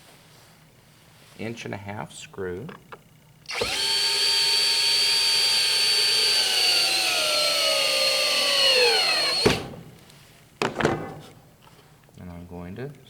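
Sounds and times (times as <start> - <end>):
power drill drilling into wood: 3.5 - 10.0.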